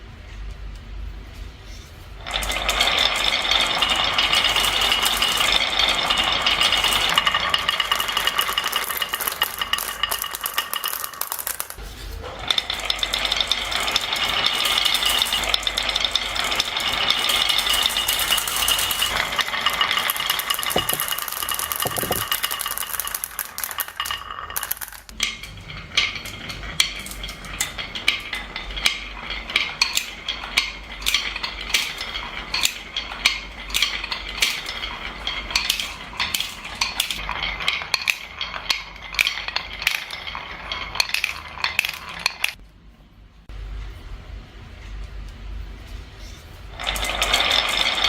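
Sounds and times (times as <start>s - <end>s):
marbles clattering along a run: 2.3s - 11.8s, 12.4s - 42.6s, 46.8s - 48.0s
mechanical rattling: 12.4s - 42.6s.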